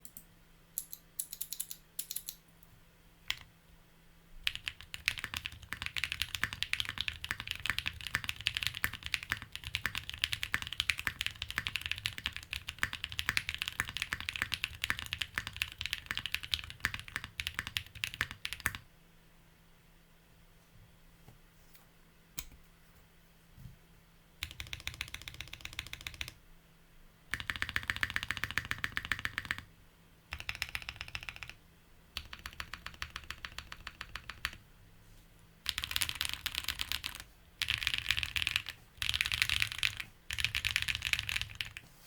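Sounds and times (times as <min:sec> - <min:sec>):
mechanical keyboard typing: 0:00.8 - 0:02.4, 0:03.3 - 0:03.5, 0:04.4 - 0:18.8, 0:24.4 - 0:26.4, 0:27.3 - 0:29.7, 0:30.3 - 0:31.6, 0:32.2 - 0:34.6, 0:35.7 - 0:41.8.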